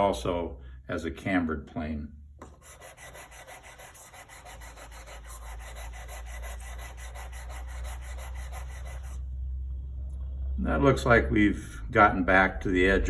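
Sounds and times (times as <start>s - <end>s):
plane blade scrubbing on sandpaper: 2.5s - 9.2s.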